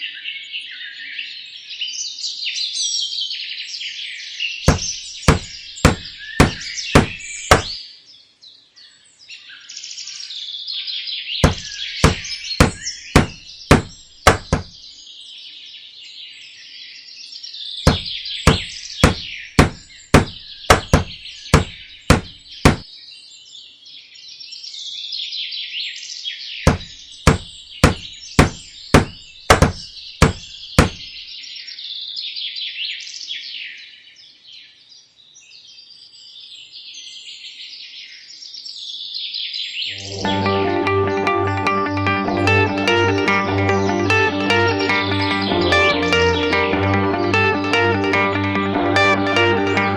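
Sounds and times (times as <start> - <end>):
hammer tapping nails into wood: 4.7 - 7.8, 11.4 - 14.7, 17.9 - 22.8, 26.7 - 31.0.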